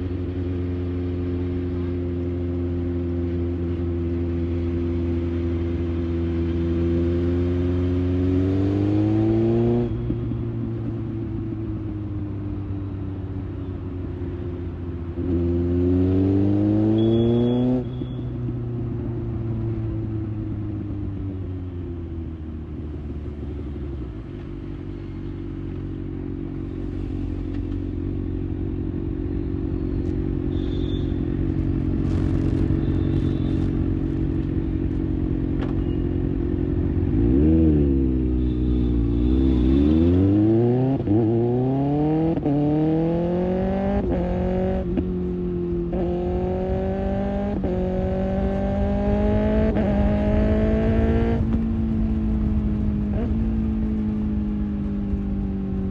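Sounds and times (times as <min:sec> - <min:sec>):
motorcycle engine revving: 0:30.0 - 0:55.9.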